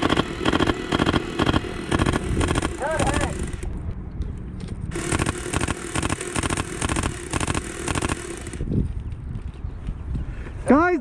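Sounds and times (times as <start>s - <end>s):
airsoft gun rapid bursts: 0.0s - 3.6s, 4.9s - 8.6s
steady whine: 0.0s - 4.0s, 4.6s - 8.7s.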